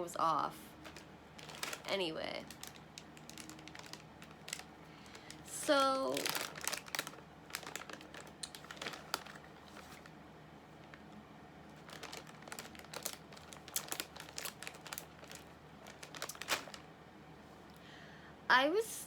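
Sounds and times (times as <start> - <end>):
snack packaging crinkling: 0.7 - 10.2, 11.8 - 16.8.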